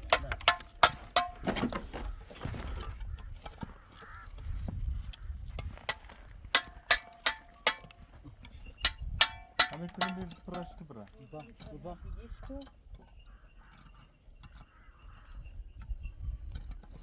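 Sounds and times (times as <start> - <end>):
chopping knocks with ringing: 0.0 - 1.7, 6.6 - 8.0, 8.8 - 10.7.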